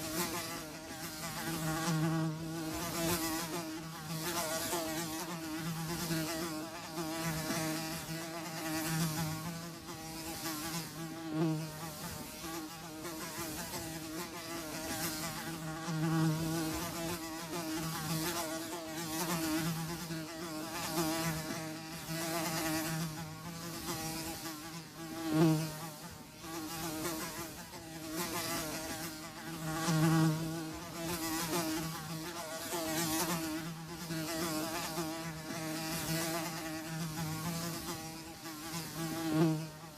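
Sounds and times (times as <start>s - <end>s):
houseflies buzzing: 0.0s - 39.9s.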